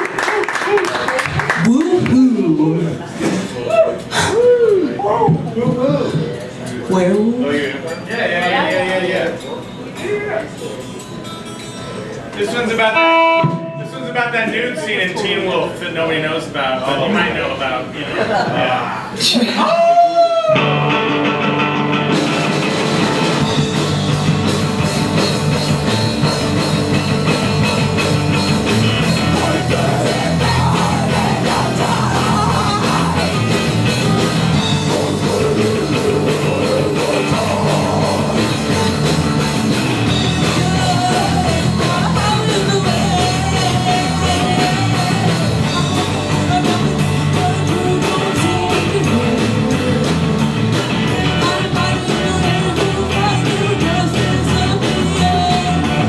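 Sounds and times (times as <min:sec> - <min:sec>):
live rock band playing: 0:12.9 - 0:13.9, 0:20.5 - 0:56.0.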